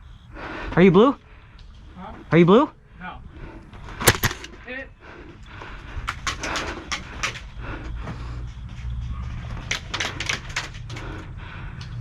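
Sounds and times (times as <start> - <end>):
airsoft gunshots: 4.0 - 4.5.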